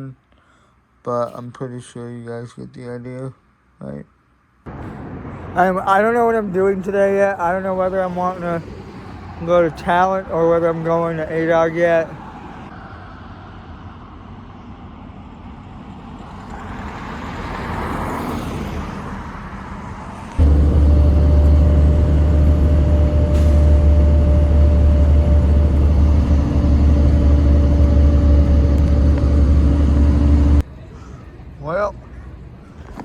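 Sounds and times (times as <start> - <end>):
vehicle passing: 4.7 - 30.7
low rumble with constant hum: 20.4 - 30.7.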